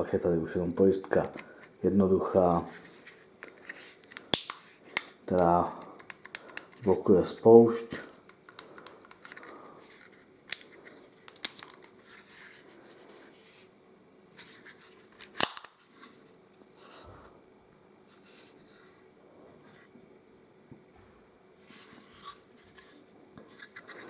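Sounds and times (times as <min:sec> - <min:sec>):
pistol clicks: 0:04.2 - 0:05.1, 0:15.4 - 0:15.7
handling rustle: 0:21.6 - 0:24.0.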